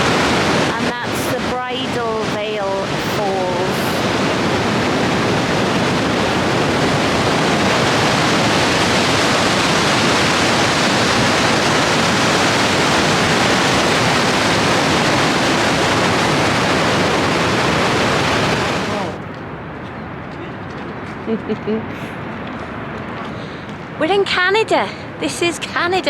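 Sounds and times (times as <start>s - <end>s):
waterfall roaring: 0.0s - 19.3s.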